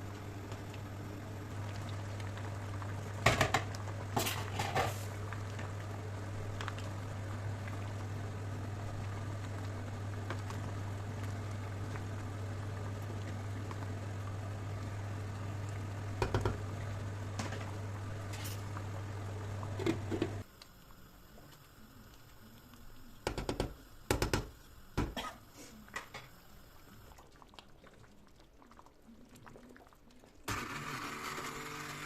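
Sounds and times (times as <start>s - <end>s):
kitchen appliance humming: 0.0s - 20.9s, 30.5s - 32.0s.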